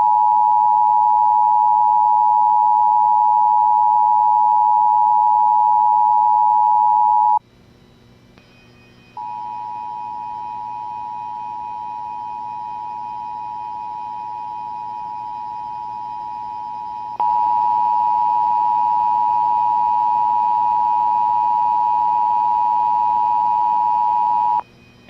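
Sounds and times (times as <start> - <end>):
faint hum: 0.0 - 25.0
quieter steady tone: 8.4 - 25.0.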